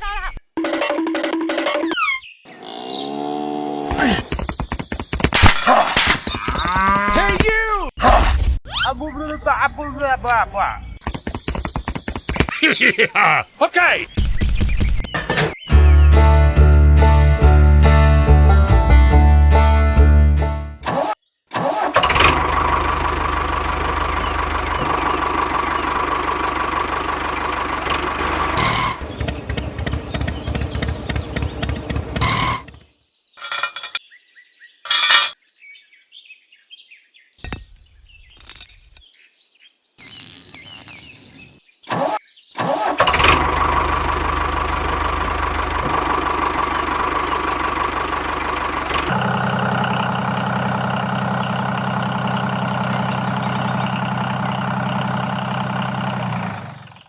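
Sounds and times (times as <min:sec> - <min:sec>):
lower-pitched engine: 0:22.0 - 0:32.9, 0:43.0 - 0:57.0
small engine running: 0:22.0 - 0:32.9, 0:42.9 - 0:57.0
scattered knocks: 0:29.0 - 0:32.9.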